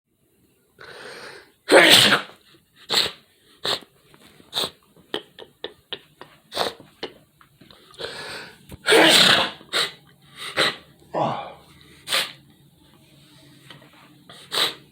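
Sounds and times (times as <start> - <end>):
person sniffling: 0.8 - 1.5, 4.5 - 4.8, 6.4 - 6.9, 7.8 - 12.4, 14.3 - 14.9
person sneezing: 0.9 - 3.9, 4.5 - 4.8, 6.5 - 6.8, 8.0 - 12.4, 14.3 - 14.9.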